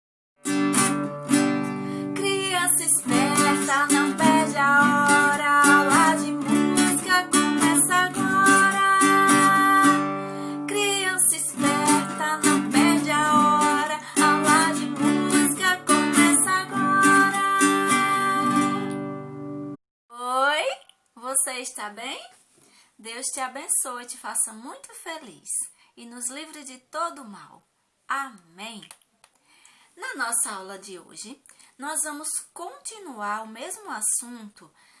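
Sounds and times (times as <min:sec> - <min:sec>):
acoustic guitar strumming: 0:00.4 - 0:19.8.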